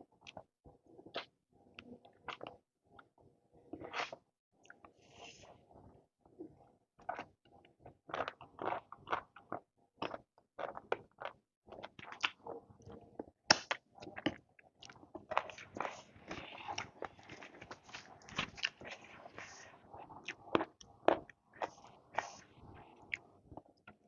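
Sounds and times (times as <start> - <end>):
person chewing and mouth smacks: 8.1 - 22.4, 23.0 - 24.0.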